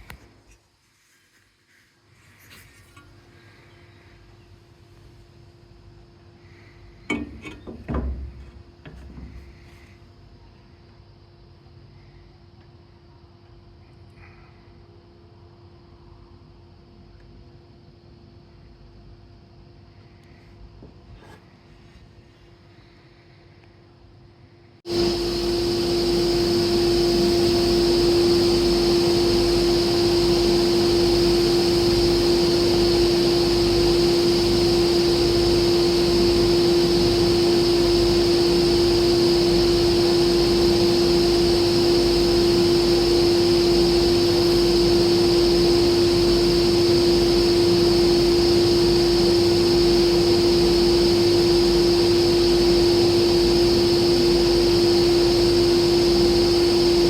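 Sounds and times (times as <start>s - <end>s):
machine humming: 24.9s - 57.0s.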